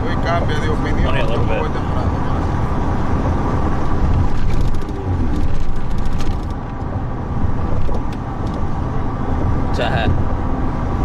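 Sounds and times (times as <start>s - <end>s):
car interior rumble: 0.0s - 11.0s.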